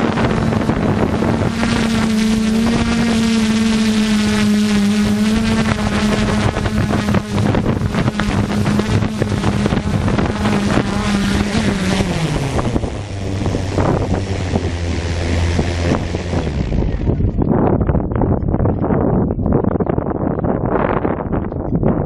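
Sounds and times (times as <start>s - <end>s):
drone propellers buzzing: 0.0s - 22.0s
wind buffeting microphone: 0.0s - 22.0s.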